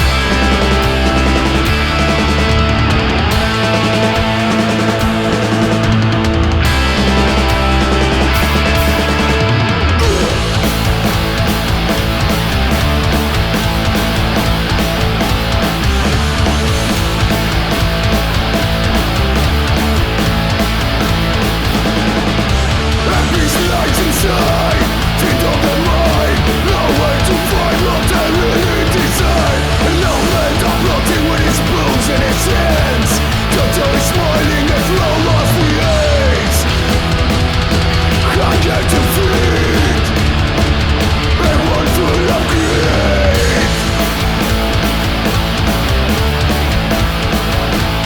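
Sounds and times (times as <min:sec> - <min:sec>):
bass line: 0:00.0 - 0:48.0
distorted electric guitars: 0:00.0 - 0:48.0
drums and cymbals: 0:00.0 - 0:48.0.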